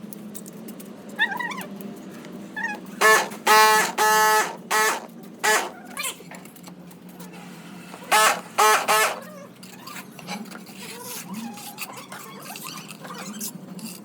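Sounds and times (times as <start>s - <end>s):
small dog yipping: 1.2s - 1.7s.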